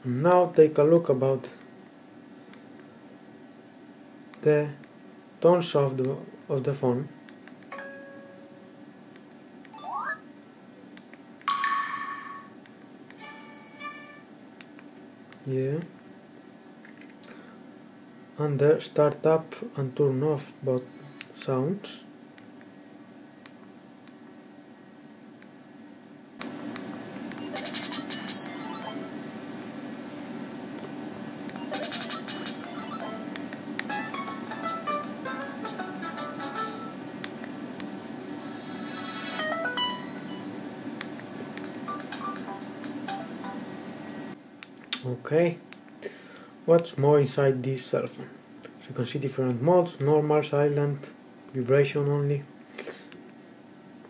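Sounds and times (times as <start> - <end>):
bright phone chime: 7.7 - 8.7, 13.2 - 14.3, 39.4 - 40.5.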